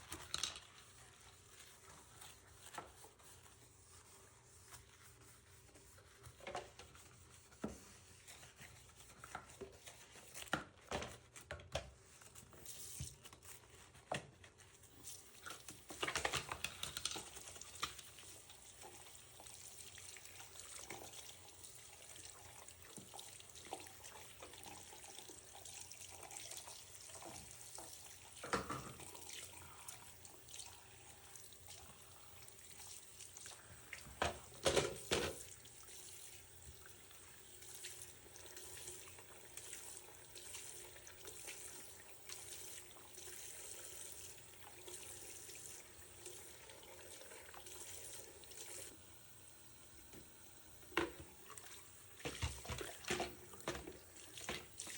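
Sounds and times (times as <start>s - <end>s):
tap water running into sink: 15.1s - 54.9s
knocks and clatters of handling: 34.1s - 35.5s.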